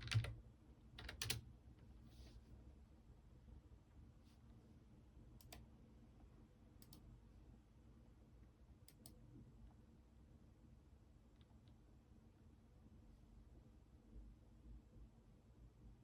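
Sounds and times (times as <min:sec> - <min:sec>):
computer mouse clicking: 0:05.4 - 0:05.6, 0:06.8 - 0:07.1, 0:08.9 - 0:09.2.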